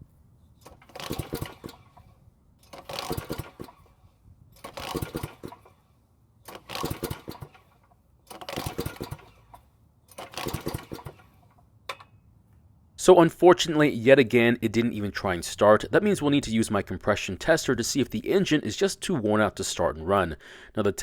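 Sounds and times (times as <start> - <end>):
recoil starter rope whir: 0.5 - 11.6
small engine turning over: 0.6 - 11.6.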